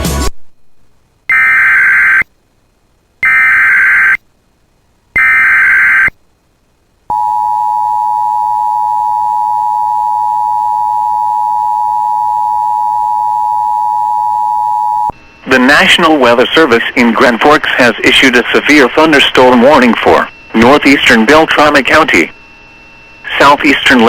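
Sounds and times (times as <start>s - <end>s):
data tone bursts: 1.3s - 2.3s, 3.2s - 4.2s, 5.2s - 6.2s, 7.1s - 24.0s
steady alert attention tone: 5.2s - 6.1s.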